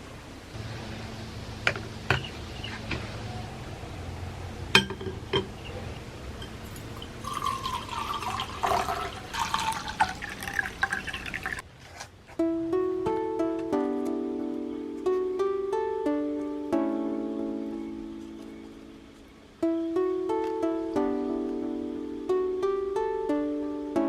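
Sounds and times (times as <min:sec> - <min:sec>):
plucked-string music: 0:00.6 - 0:03.7, 0:12.4 - 0:24.0
liquid pouring into container: 0:06.4 - 0:11.6.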